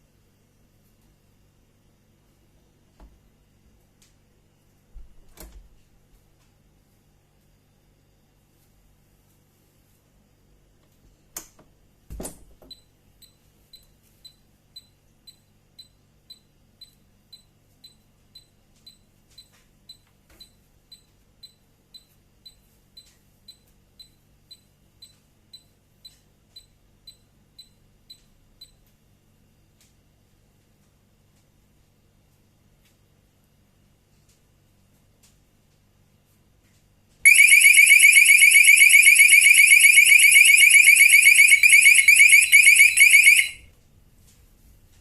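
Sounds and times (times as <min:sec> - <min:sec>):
short high alarm beeps: 0:37.3 - 0:43.7.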